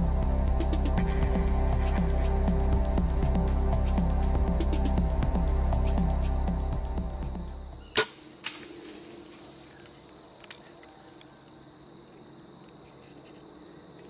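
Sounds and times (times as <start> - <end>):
background music: 0.0 - 8.2
arrow striking smack: 7.9 - 9.0
bow string snap: 7.9 - 9.0.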